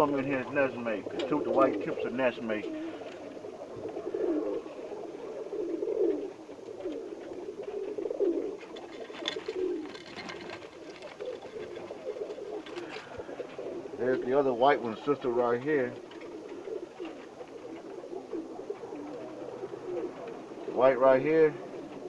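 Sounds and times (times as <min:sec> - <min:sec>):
pigeons cooing: 0:00.0 - 0:22.0.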